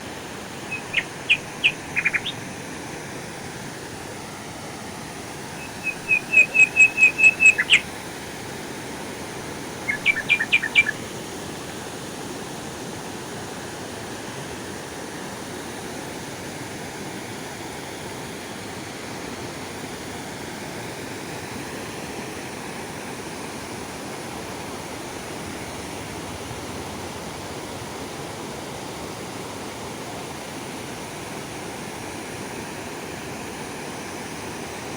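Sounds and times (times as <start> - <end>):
waterfall rushing: 0.0 - 13.3
bird calling rapid high notes: 0.7 - 2.4, 5.6 - 7.9, 9.9 - 11.0.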